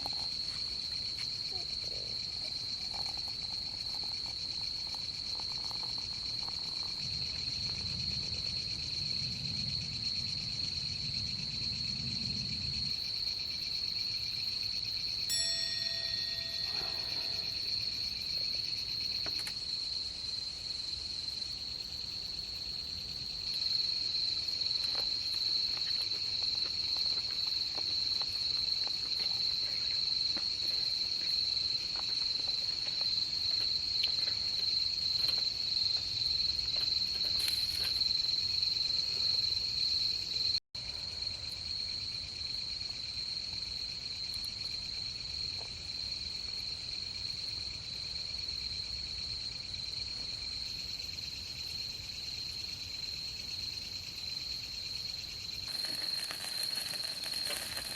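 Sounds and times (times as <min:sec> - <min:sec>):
insects trilling: 0:00.0 - 0:57.9.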